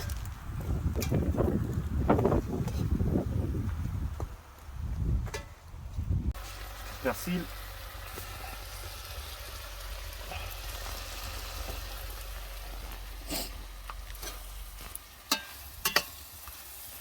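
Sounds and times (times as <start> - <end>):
food sizzling in a pan: 6.4 - 17.0.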